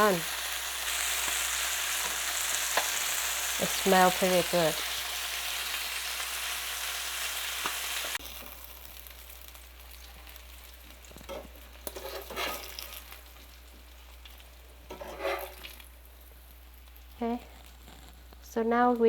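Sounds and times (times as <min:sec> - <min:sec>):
fish sizzling in a pan: 0:00.0 - 0:19.0
knocks and scrapes: 0:14.9 - 0:15.6.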